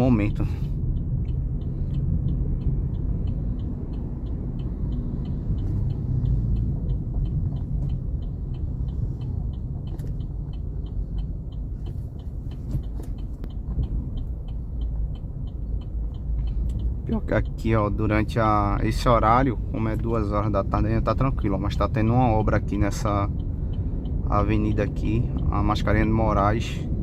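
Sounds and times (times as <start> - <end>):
light even ticking: 0.0 - 27.0
road and engine rumble: 0.0 - 27.0.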